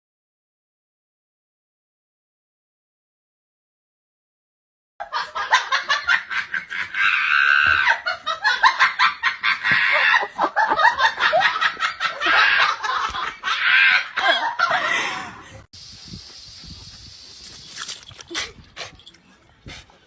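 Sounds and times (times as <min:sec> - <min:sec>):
people laughing: 0:05.0 - 0:15.7
steady hiss: 0:15.8 - 0:18.3.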